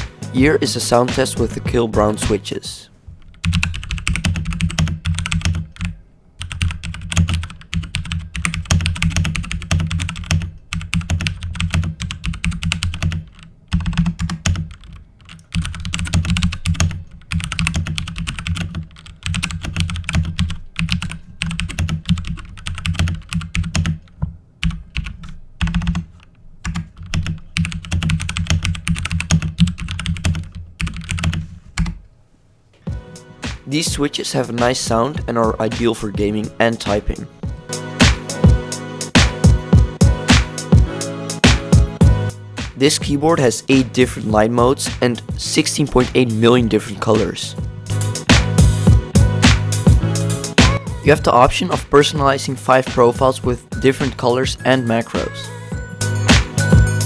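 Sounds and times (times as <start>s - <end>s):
mechanical keyboard typing: 3.4s - 32.0s.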